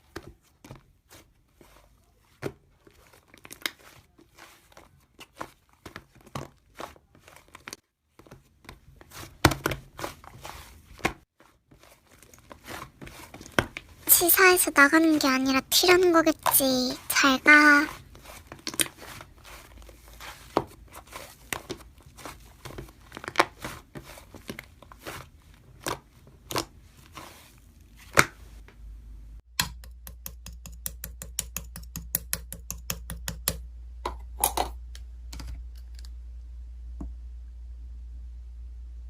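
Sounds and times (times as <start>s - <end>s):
slime clicking and crackling: 2.9s - 7.7s, 16.3s - 27.4s
steady low hum: 33.5s - 39.0s.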